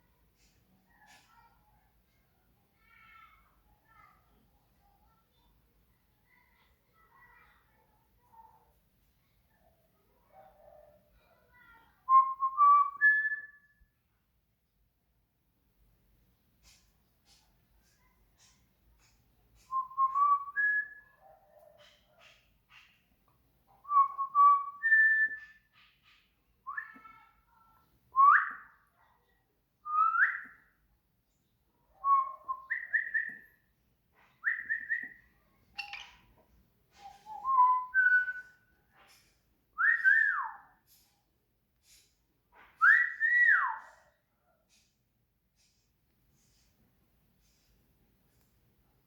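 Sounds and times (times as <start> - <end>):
clear whistled notes: 37.1 - 38.6.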